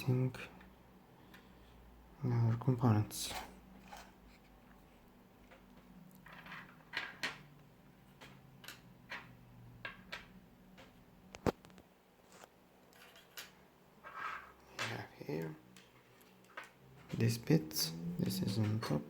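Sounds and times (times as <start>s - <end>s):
plastic parts clicking and tapping: 5.4s - 13.6s, 14.7s - 17.4s.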